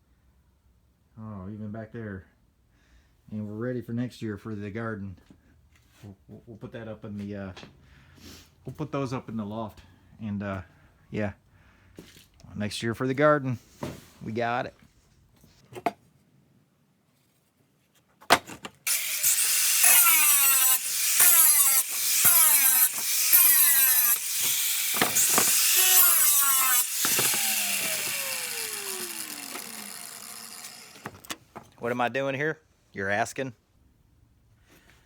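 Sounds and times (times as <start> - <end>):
power saw cutting aluminum: 18.8 - 31.6.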